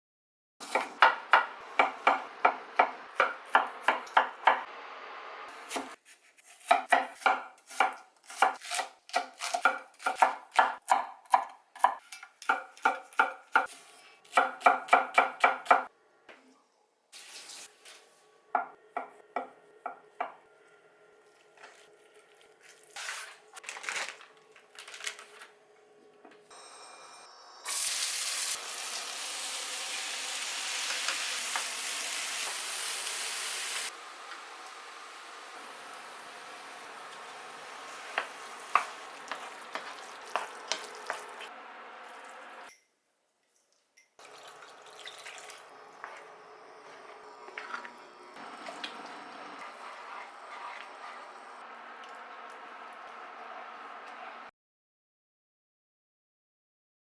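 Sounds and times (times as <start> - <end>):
knife chopping on cutting board: 0.6 - 4.6, 5.6 - 15.9
frying sizzle in pan: 26.5 - 42.7.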